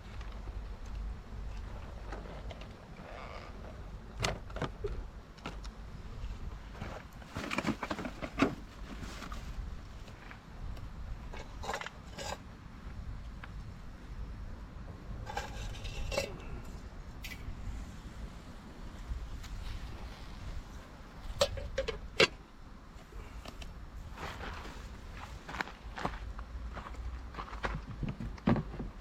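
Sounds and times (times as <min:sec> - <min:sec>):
steady low rumble: 0:00.0 - 0:07.3.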